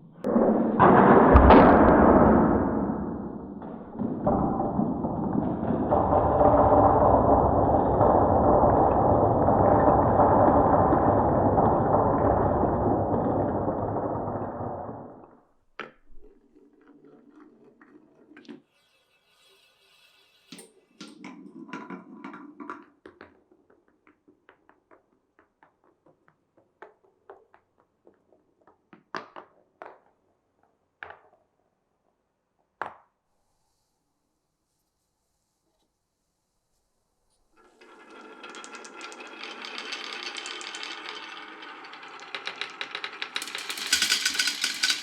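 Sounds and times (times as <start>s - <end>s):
marble clacks and clicks: 3.6s - 18.6s, 37.6s - 45.0s
marbles rolling on a track: 3.6s - 26.2s, 37.6s - 45.0s.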